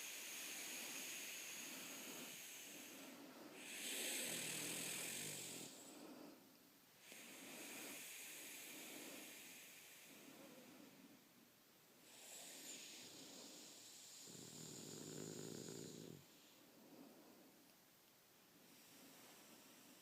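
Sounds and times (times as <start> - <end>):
pet snoring: 0.0 - 5.9, 12.1 - 16.3.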